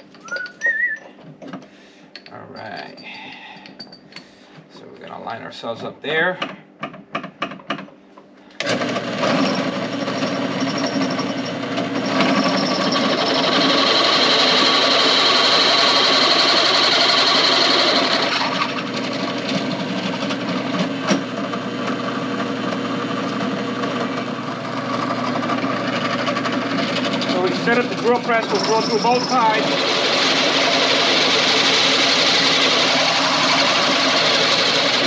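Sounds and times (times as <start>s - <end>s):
drill press motor hum: 8.5s - 35.0s
drill bit cutting steel: 9.4s - 20.5s, 24.3s - 35.0s.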